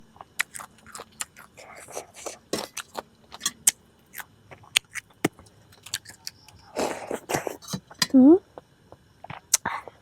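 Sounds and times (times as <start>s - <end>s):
food crackling while eaten: 0.1s - 8.0s.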